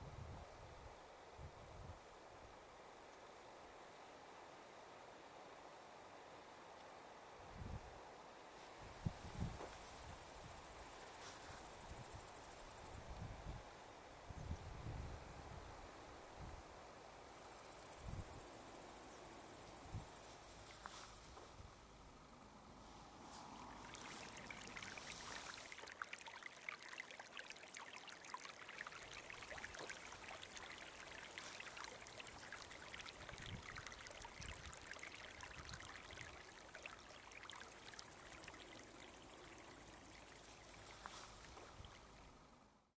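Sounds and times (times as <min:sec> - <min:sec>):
water trickling in stream: 0:00.2 - 0:42.9
high-pitched insect trill: 0:17.3 - 0:25.9, 0:29.2 - 0:33.9, 0:35.0 - 0:42.6.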